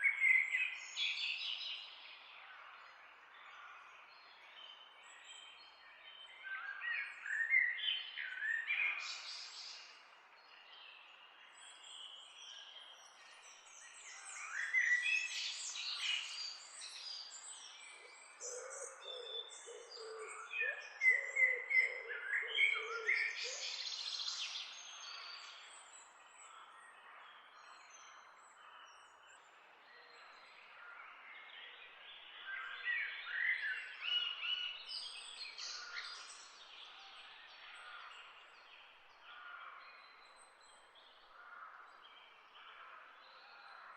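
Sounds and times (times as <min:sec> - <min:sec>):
birds chirping and singing: 0:10.7 - 0:43.9.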